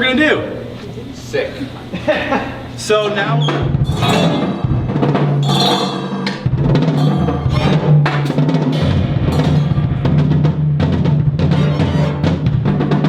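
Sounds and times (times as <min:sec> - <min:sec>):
drum kit playing: 0:03.6 - 0:13.0
held low bass notes: 0:03.7 - 0:12.7.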